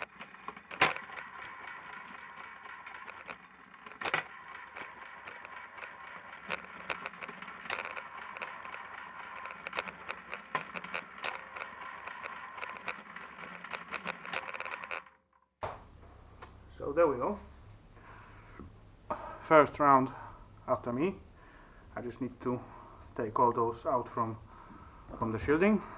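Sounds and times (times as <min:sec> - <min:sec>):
wire stripping machine whine: 0:00.0 - 0:16.3, 0:17.9 - 0:25.9.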